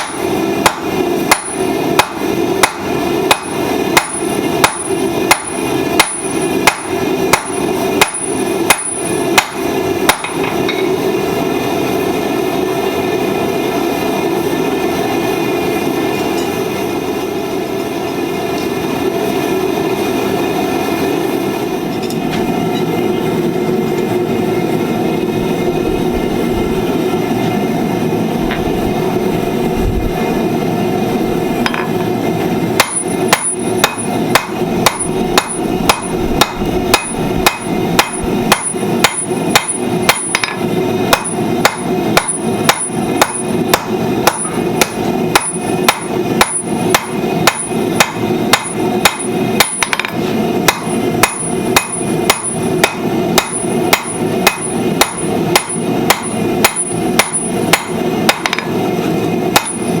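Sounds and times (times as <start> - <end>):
hammer striking steel on anvil: 0.0 - 11.1, 16.2 - 16.6, 31.6 - 32.1, 32.8 - 58.9, 59.5 - 60.0.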